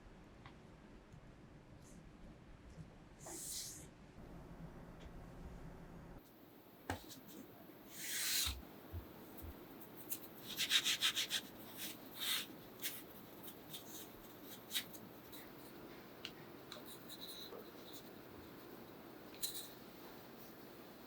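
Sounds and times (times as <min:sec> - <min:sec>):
hands rubbing pasta dough: 0:06.9 - 0:20.7.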